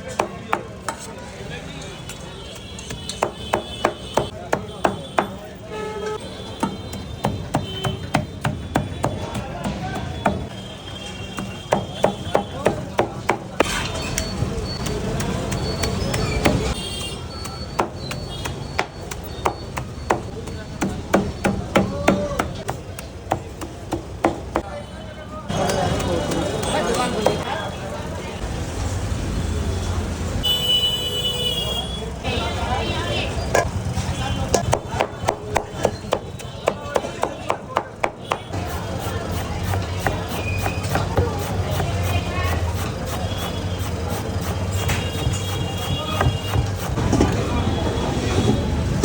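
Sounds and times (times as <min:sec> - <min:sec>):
knife chopping on cutting board: 0:34.6 - 0:47.0.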